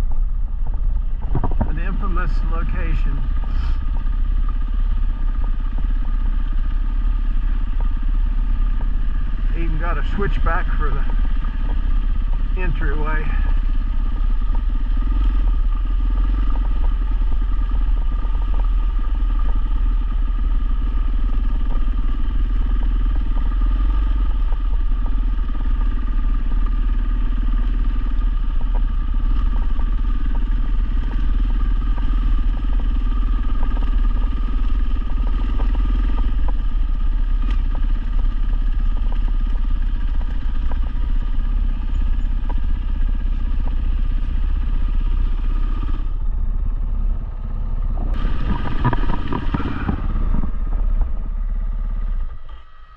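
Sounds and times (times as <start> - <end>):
motorcycle engine running: 0.0 - 52.9
small clatters and ticks: 13.5 - 46.2.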